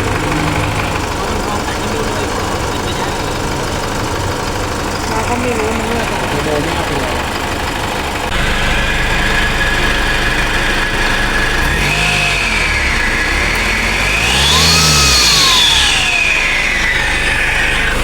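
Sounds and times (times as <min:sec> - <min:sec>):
diesel engine revving: 0:00.0 - 0:18.0
turbo whistle: 0:08.3 - 0:18.0.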